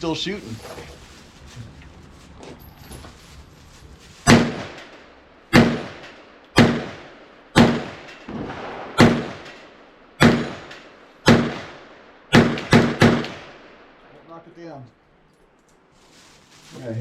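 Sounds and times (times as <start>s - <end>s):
pistol shots: 4.3s - 13.8s.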